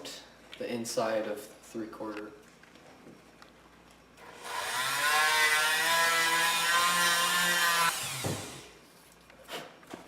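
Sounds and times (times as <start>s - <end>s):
rotary tool whine: 4.2s - 8.7s.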